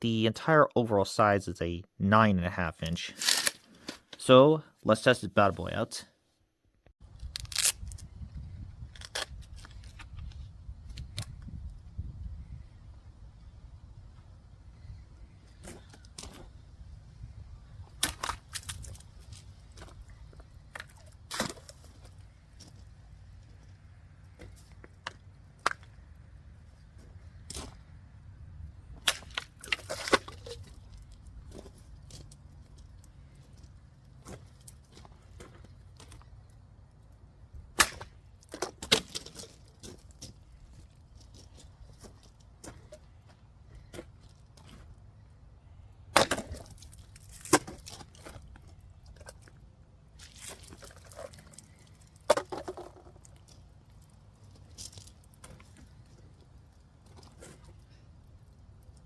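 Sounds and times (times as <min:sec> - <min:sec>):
hatchet chopping: 0:37.8 - 0:38.2, 0:46.2 - 0:46.6
axe chopping plastic bottles: 0:37.8 - 0:39.4, 0:46.1 - 0:46.8.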